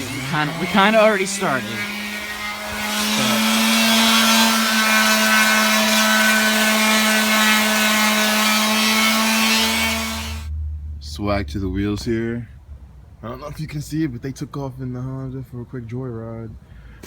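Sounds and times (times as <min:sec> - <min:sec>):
power sander running: 0:00.0 - 0:10.5.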